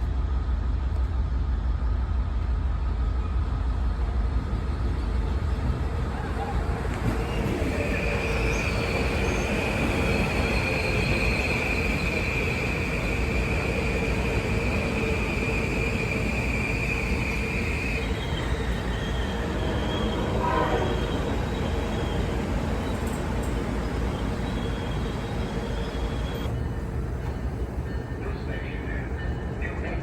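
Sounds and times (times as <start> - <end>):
train rumbling past: 0.0 - 30.0
high wheel squeal: 6.2 - 26.9.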